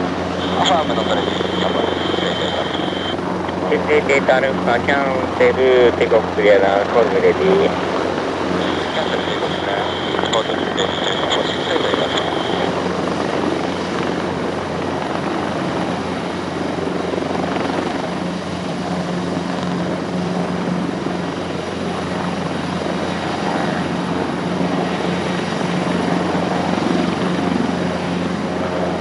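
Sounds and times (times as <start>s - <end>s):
constant low hum: 0.0s - 14.8s
helicopter turbine and rotor running: 0.0s - 29.0s.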